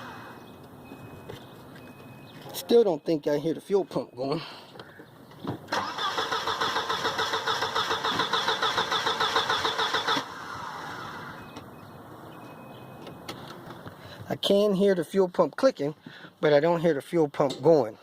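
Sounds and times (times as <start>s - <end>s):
car engine cranking on starter: 5.7s - 11.5s.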